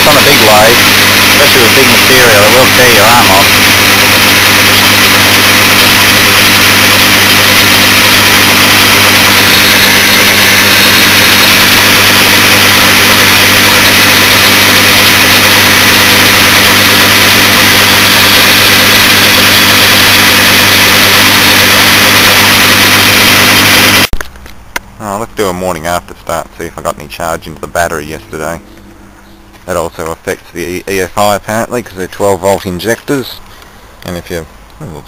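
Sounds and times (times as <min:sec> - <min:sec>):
lathe running: 0:00.0 - 0:24.1.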